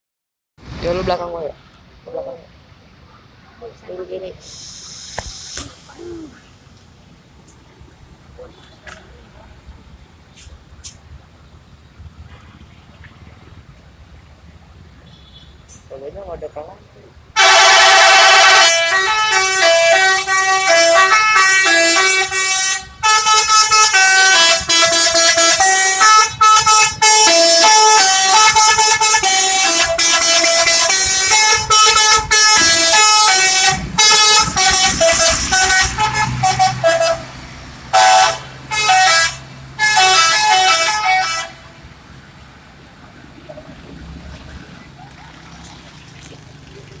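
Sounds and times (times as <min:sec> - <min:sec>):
multi-tone air horn melody: 0:17.4 - 0:37.3, 0:37.9 - 0:41.7.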